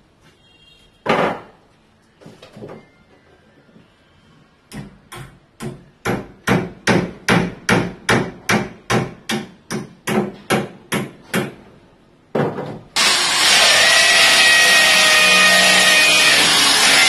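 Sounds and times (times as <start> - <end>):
hammer striking wood: 4.7 - 11.6.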